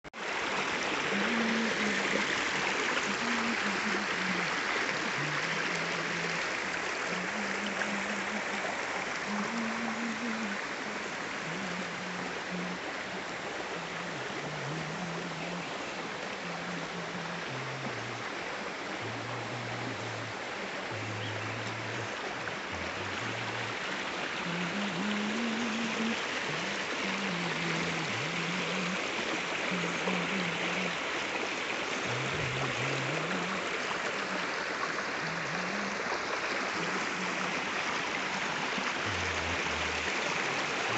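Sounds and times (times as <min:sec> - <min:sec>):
waterfall roaring: 0:00.2 - 0:40.9
slow low-pitched melody: 0:07.2 - 0:29.0.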